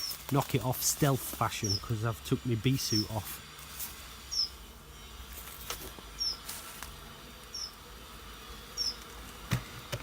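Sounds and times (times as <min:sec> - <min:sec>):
high falling chirp: 0:01.5 - 0:02.0, 0:04.2 - 0:04.6.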